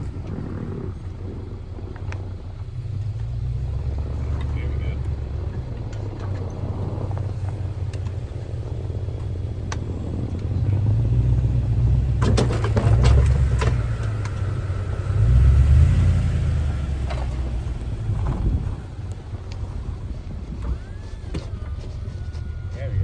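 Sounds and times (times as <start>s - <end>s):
snowplow truck engine rumble: 0.0s - 23.0s
clanks and knocks: 12.1s - 14.5s.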